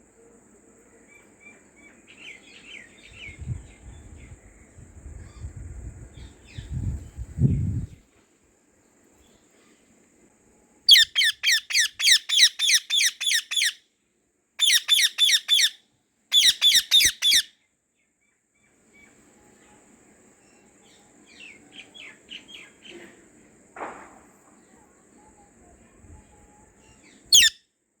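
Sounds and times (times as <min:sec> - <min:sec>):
parakeet calling: 0:10.9 - 0:13.8, 0:14.6 - 0:17.5, 0:27.3 - 0:27.6.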